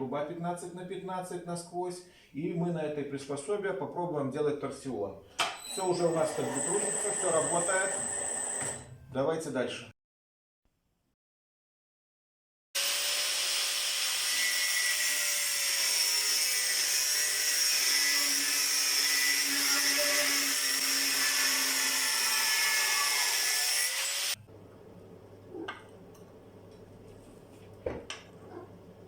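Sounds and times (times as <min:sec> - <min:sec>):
angle grinder grinding steel: 0:05.7 - 0:08.8, 0:12.8 - 0:24.4.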